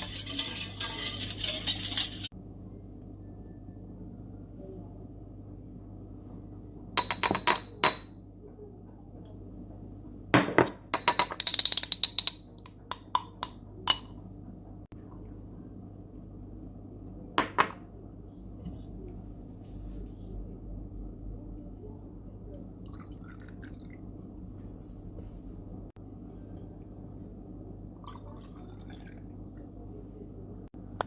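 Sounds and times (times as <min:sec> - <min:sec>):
glassware clinking: 0:07.0 - 0:08.2.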